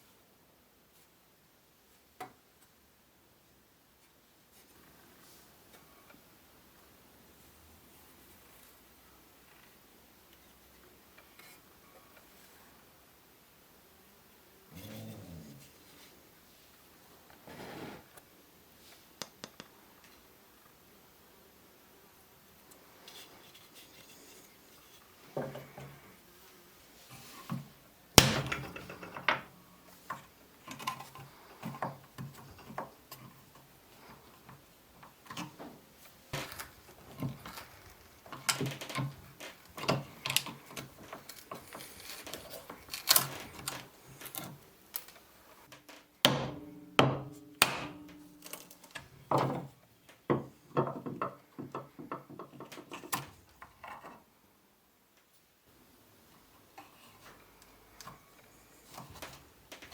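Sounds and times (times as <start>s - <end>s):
knocks and taps on wood and metal: 49.3s - 53.2s.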